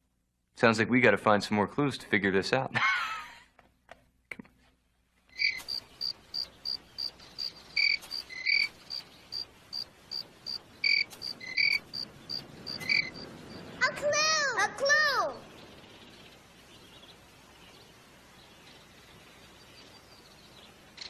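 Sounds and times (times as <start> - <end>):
high cricket-like chirps: 5.3 - 13.7
lower chirps: 5.3 - 13.8.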